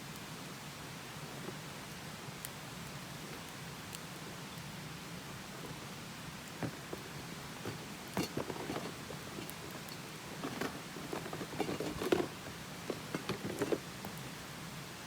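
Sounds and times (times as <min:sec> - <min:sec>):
wood fire crackling and popping: 0:05.4 - 0:14.5.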